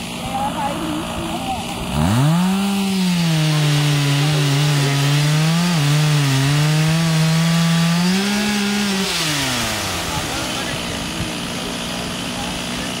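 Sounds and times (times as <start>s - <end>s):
chainsaw cutting wood: 0.0s - 13.0s.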